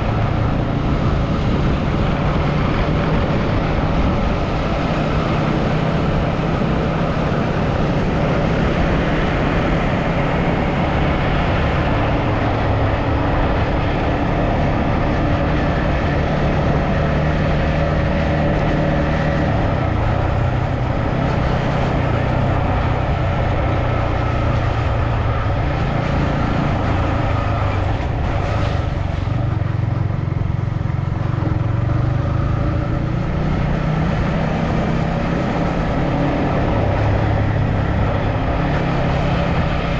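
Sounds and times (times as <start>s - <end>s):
road and wind noise: 0.0s - 39.9s
vehicle engine running: 0.0s - 39.9s.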